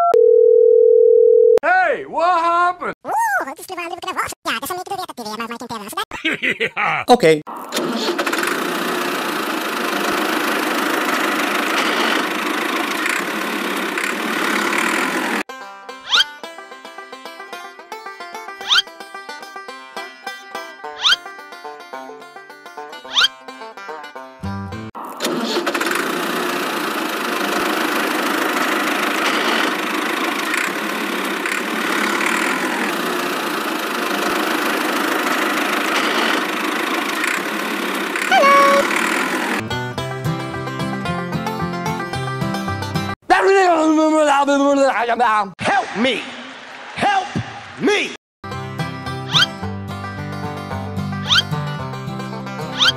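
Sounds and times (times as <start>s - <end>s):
small engine idling: 7.8s - 15.4s, 25.1s - 39.6s
small motor whirring: 7.8s - 15.4s, 25.2s - 39.6s
short squealing tone: 16.0s - 16.3s, 18.6s - 18.9s, 21.0s - 21.2s, 23.1s - 23.3s, 38.2s - 39.0s, 49.3s - 49.5s, 51.2s - 51.5s.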